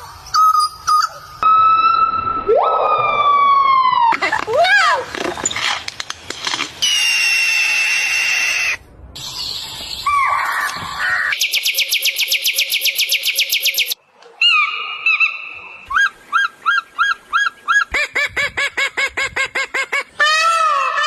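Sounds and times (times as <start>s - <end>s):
bird calls: 10.0s - 18.3s.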